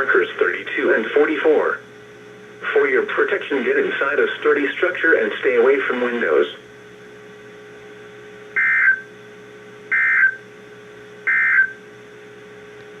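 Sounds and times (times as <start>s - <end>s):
radio background hiss: 0.0s - 6.7s
shrill digital warbles: 8.6s - 9.1s, 9.9s - 10.4s, 11.3s - 11.8s.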